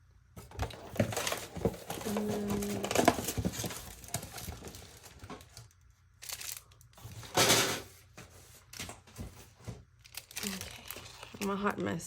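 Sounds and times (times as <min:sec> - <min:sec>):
packaging crinkling: 0:00.6 - 0:07.4, 0:10.0 - 0:11.6.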